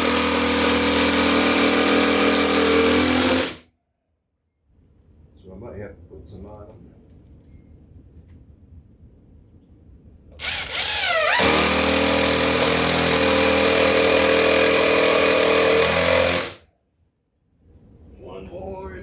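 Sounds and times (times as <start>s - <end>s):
cordless drill driving a screw: 0.0s - 3.6s, 10.4s - 16.6s.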